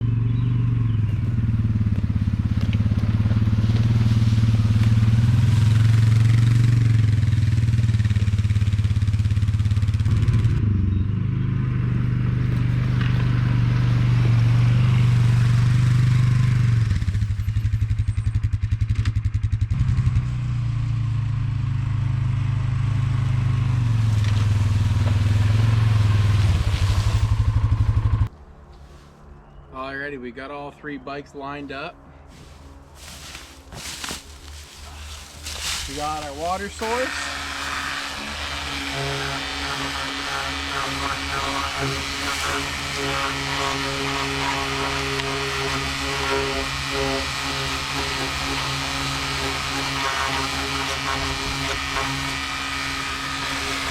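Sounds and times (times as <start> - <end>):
atv engine idling: 0.0 - 28.3.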